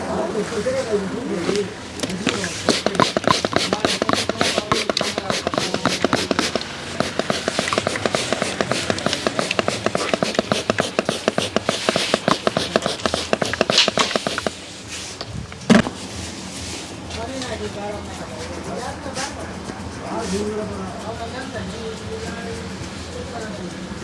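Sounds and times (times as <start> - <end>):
hands tapping in massage: 2.6 - 14.6.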